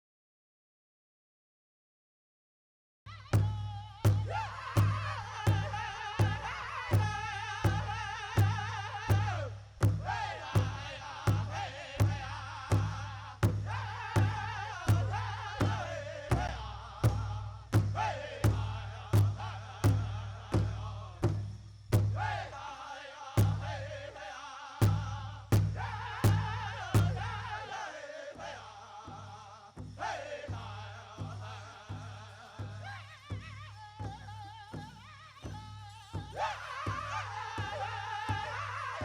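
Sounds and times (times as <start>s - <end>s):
steady drumbeat: 3.2s - 39.0s
high wavering group singing: 4.1s - 21.4s, 22.0s - 39.0s.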